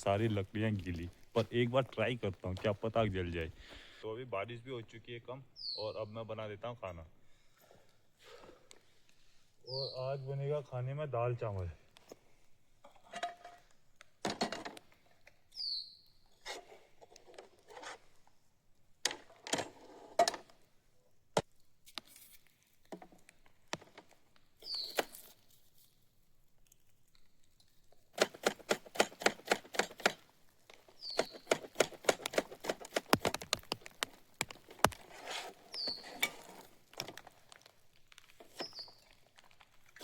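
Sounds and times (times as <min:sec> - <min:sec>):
rapid even clicking: 0:28.2 - 0:30.2, 0:31.2 - 0:35.0
sharp clicks and knocks: 0:28.2 - 0:35.1.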